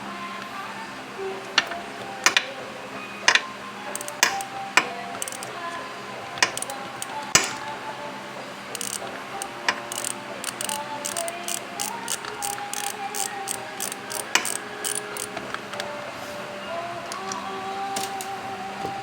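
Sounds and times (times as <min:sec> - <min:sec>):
faint music: 0:00.0 - 0:19.0
metal hand tools clinking: 0:03.3 - 0:05.6, 0:06.4 - 0:07.7, 0:08.7 - 0:15.5.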